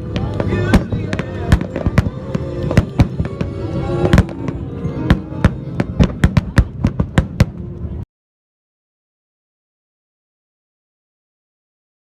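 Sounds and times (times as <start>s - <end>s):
fireworks bursting with sharp bangs: 0.0s - 8.0s
music playing: 0.0s - 8.0s.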